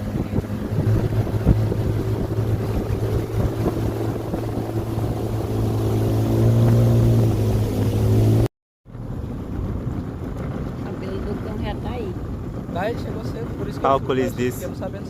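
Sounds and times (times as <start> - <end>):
outboard motor running: 0.0 - 10.6.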